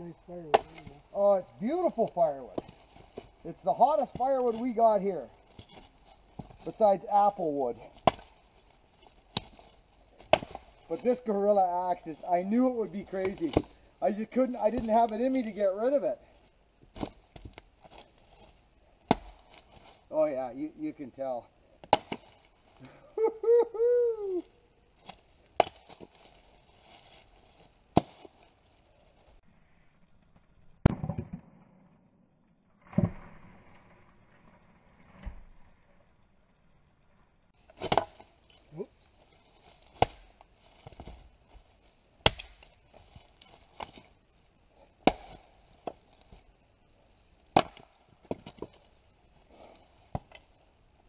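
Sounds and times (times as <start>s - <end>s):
axe splitting firewood: 0.5s - 1.0s, 1.6s - 8.4s, 9.0s - 11.6s, 12.4s - 15.6s, 16.9s - 20.2s, 21.8s - 22.9s, 25.0s - 26.4s, 27.9s - 28.4s, 37.6s - 38.7s, 39.7s - 41.2s, 42.2s - 44.1s, 45.0s - 46.4s, 47.5s - 48.9s, 49.5s - 50.5s.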